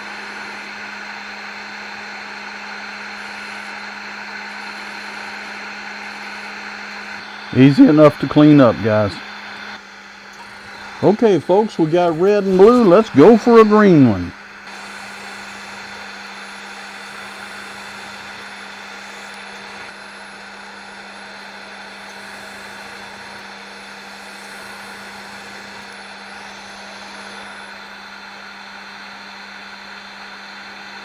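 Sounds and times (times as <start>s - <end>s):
wood lathe running: 2.5s - 16.5s.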